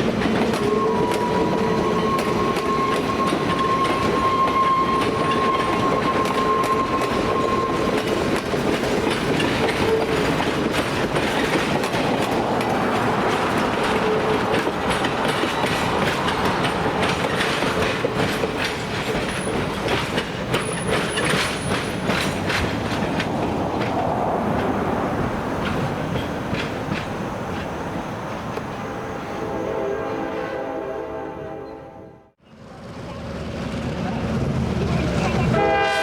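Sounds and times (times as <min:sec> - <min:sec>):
train wheels clicking over rail joints: 0:00.0 - 0:29.2
high wheel squeals: 0:00.5 - 0:08.4, 0:13.3 - 0:22.8.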